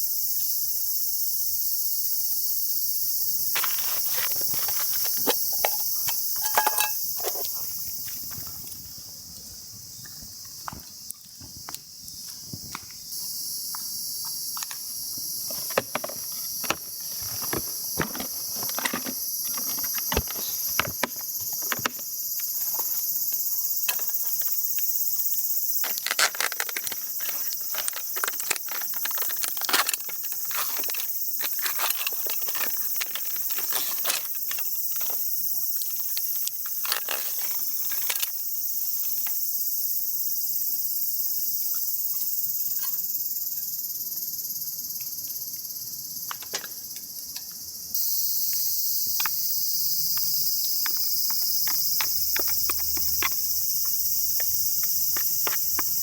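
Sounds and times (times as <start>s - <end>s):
insects chorus: 0.0s - 56.0s
clicks and knocks of handling: 3.6s - 7.6s, 15.4s - 22.1s, 25.7s - 38.4s, 46.3s - 46.8s, 50.1s - 56.0s.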